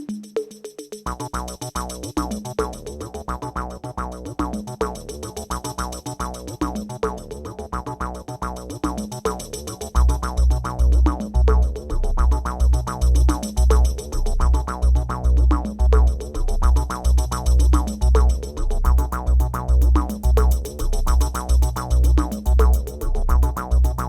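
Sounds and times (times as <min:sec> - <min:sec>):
electronic music with drum machine: 0:04.4 - 0:24.0
heavy bass line: 0:10.0 - 0:24.0.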